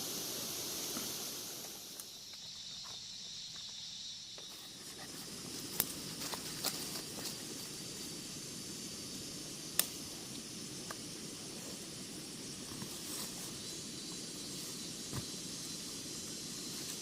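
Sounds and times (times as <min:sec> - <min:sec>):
steady outdoor hiss: 0:00.0 - 0:17.0
sharp clicks or snaps: 0:09.8 - 0:10.0.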